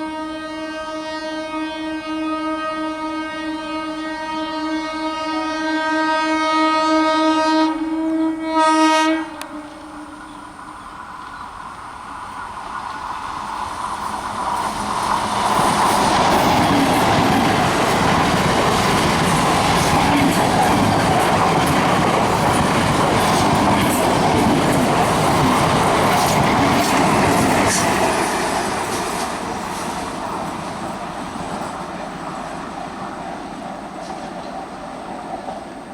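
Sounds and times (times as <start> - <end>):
train horn long blast: 0.0 - 10.6
train wheels clattering over rail joints: 12.3 - 35.8.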